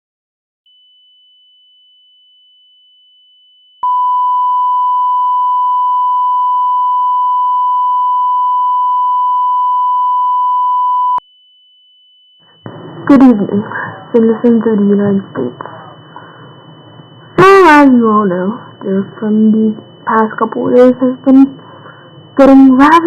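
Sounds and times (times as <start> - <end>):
faint high steady tone: 2.2 - 23.0
loud steady alert tone: 12.0 - 23.0.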